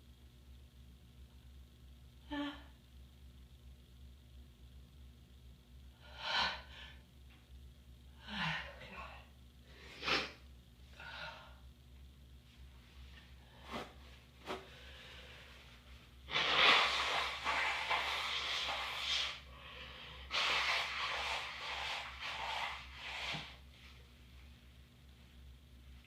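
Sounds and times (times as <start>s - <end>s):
person blowing nose: 16.3s - 19.5s, 20.2s - 23.6s.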